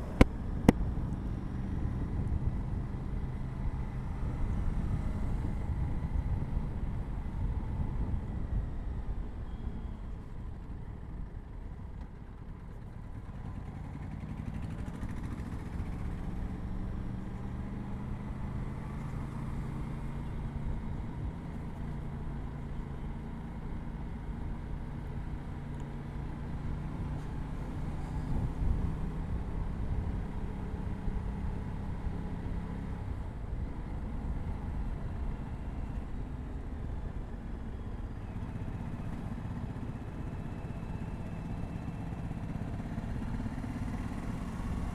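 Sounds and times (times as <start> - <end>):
motorcycle engine riding: 0.0 - 7.3, 12.6 - 44.9
road and wind rumble: 0.0 - 44.9.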